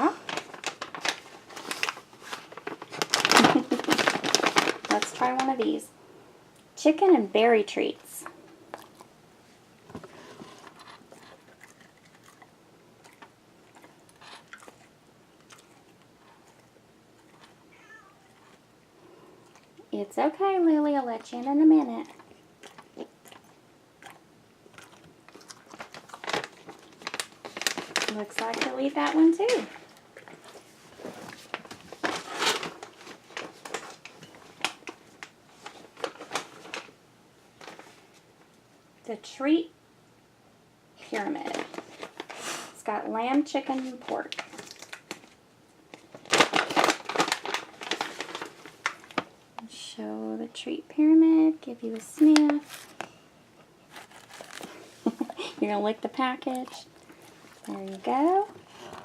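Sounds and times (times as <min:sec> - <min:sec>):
dog chewing crunchy treat: 0:08.7 - 0:09.1, 0:10.1 - 0:17.6, 0:21.8 - 0:36.9, 0:44.3 - 0:45.4, 0:53.8 - 0:59.0.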